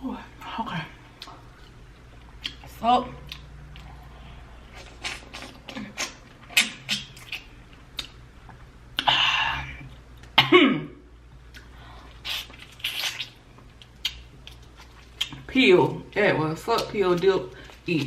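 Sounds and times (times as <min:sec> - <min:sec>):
wet lip smacks: 0:06.0 - 0:09.1, 0:11.5 - 0:14.6
person coughing: 0:10.4 - 0:11.0.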